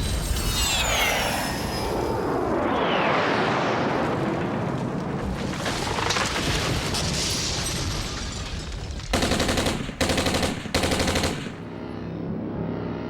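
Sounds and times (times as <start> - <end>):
loud rumbling battle din: 9.1 - 11.7
machine-gun fire: 9.1 - 11.8.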